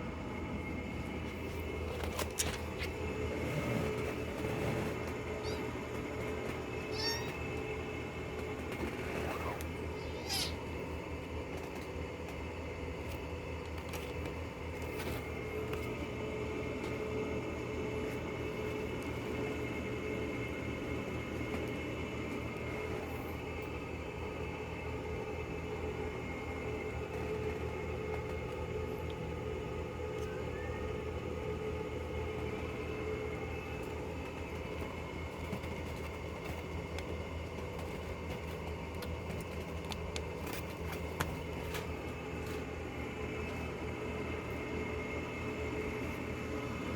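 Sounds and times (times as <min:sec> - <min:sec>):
steady mechanical hum: 0:00.0 - 0:46.9
kittens mewing: 0:05.3 - 0:06.0, 0:06.8 - 0:07.6, 0:09.3 - 0:10.9.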